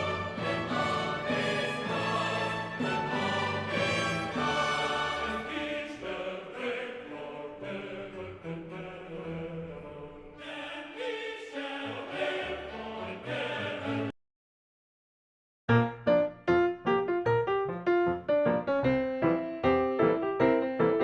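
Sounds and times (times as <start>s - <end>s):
sustained layered background music: 0.0s - 9.0s.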